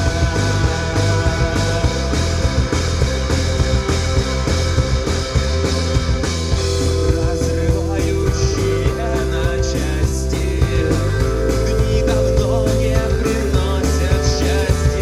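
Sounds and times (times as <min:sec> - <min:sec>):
rock band playing live: 0:00.0 - 0:15.0
steady drum beat: 0:00.0 - 0:15.0.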